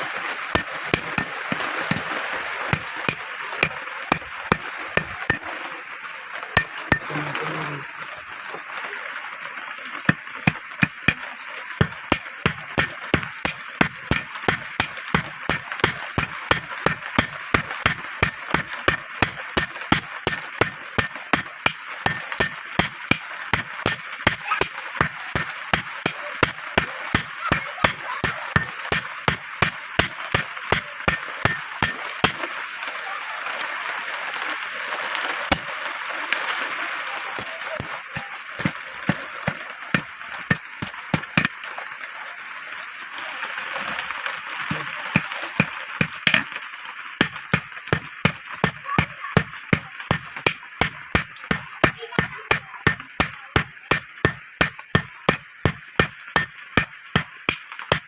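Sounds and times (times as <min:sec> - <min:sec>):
hammer striking iron on anvil: 0:00.5 - 0:02.1, 0:02.7 - 0:05.4, 0:11.8 - 0:27.3, 0:27.9 - 0:32.4, 0:37.8 - 0:41.5, 0:45.6 - 0:46.5, 0:47.2 - 0:58.0.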